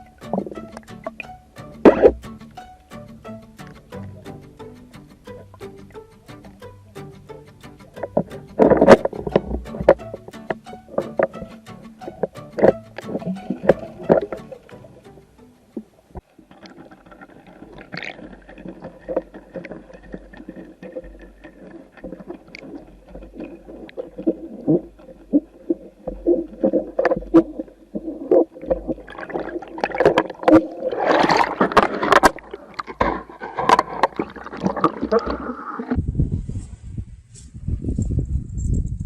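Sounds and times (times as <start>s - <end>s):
muffled water sloshing underwater: 0.0s - 36.3s
surf splashing: 7.8s - 36.0s.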